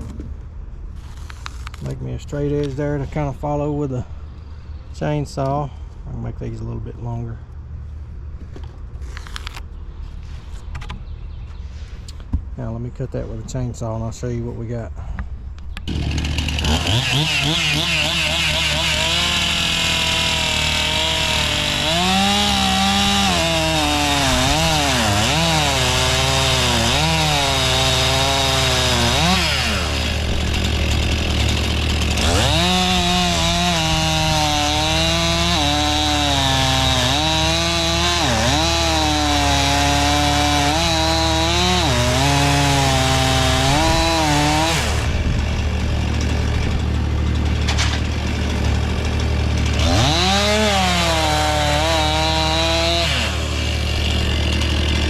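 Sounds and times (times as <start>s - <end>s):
chainsaw cutting wood: 15.9s - 55.0s.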